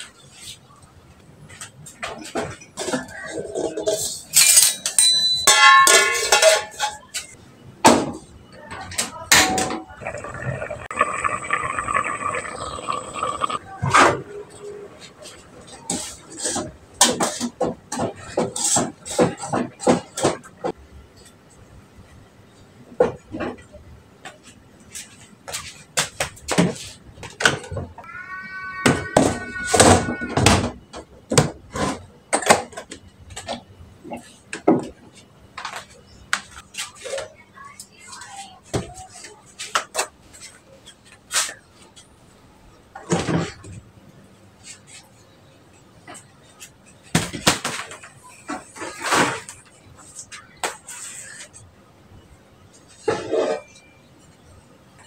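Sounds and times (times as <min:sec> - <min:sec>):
pots and pans clattering: 0:02.5 - 0:07.0
steady mixed noise: 0:10.0 - 0:15.7.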